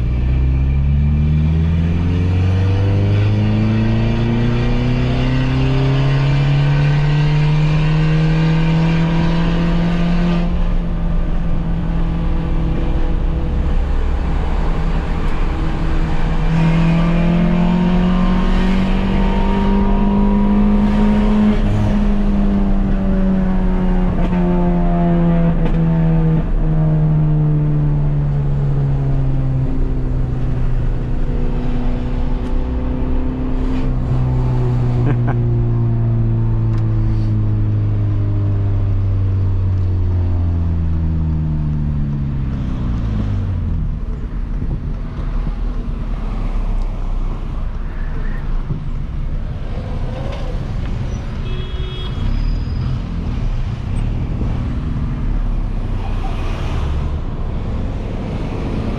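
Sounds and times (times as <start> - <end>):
loud car engine revving: 0.0 - 27.6, 28.8 - 37.4, 48.6 - 58.9.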